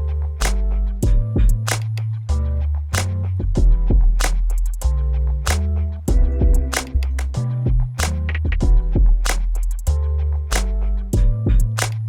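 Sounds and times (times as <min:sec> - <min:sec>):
deep bass line: 0:00.0 - 0:12.0.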